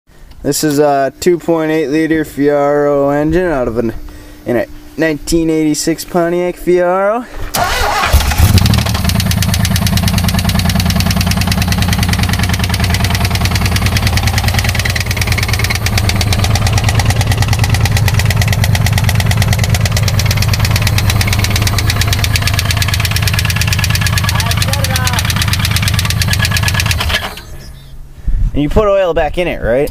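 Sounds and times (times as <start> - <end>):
car engine starting: 7.5 - 28.0
engine idling with rapid knock: 7.6 - 27.5.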